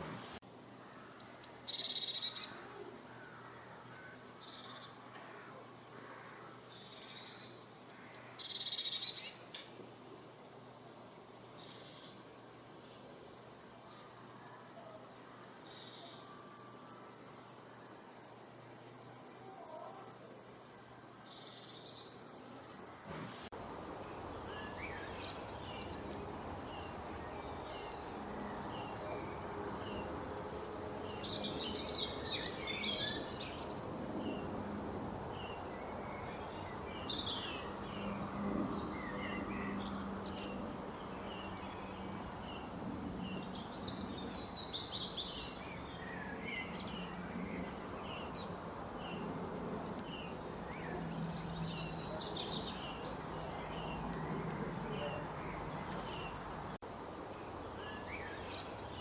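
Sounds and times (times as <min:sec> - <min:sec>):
steady background hiss: 0:00.0 - 0:59.0
birds chirping and singing: 0:24.2 - 0:34.4.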